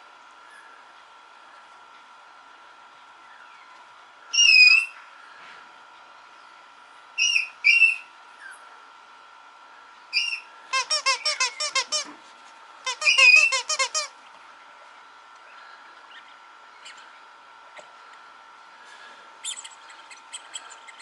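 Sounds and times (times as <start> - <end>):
puppy squealing and whining: 10.2 - 12.1, 12.9 - 14.1
puppy yelping: 10.2 - 12.1, 12.9 - 14.1.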